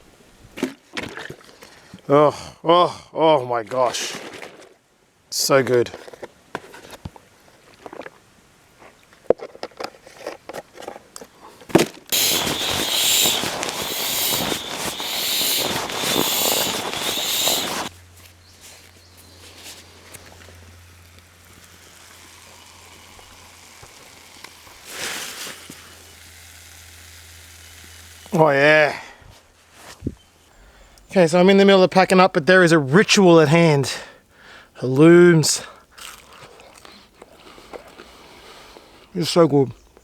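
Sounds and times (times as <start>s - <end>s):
cheese sizzling in a pan: 12.1s - 17.9s, 21.2s - 28.4s.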